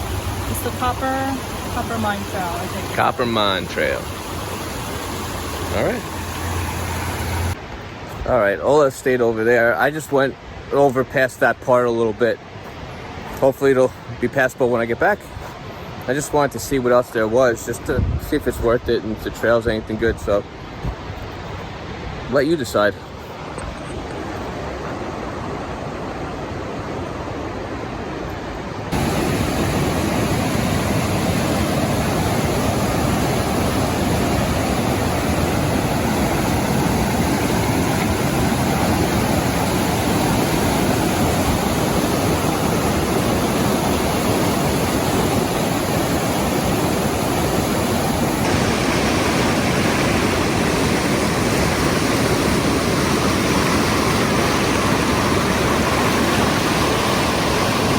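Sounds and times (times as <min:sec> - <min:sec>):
whitewater rushing: 0:00.0 - 0:07.6, 0:24.2 - 0:57.9.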